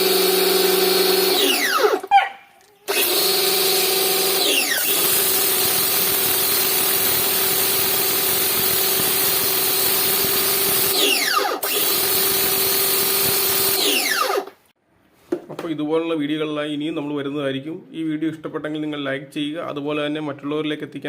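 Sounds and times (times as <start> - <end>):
motor winding down whine: 0.0 - 2.1, 2.9 - 14.6
pressure washer motor hum: 0.0 - 2.1, 2.8 - 14.6.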